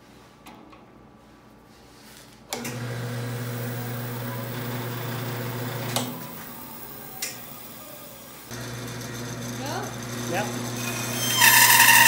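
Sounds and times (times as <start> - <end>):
bandsaw motor humming: 2.6 - 12.0.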